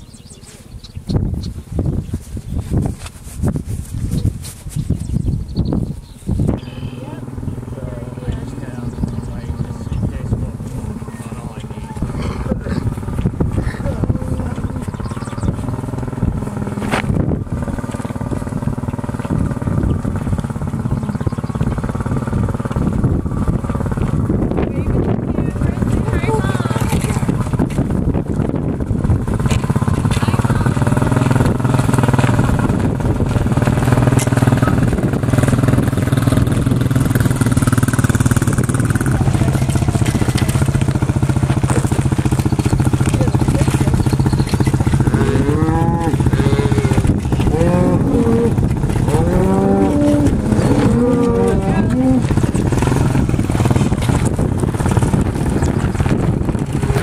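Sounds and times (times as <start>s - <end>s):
vehicle engine running: 0.0s - 57.0s
cattle mooing: 43.6s - 53.2s.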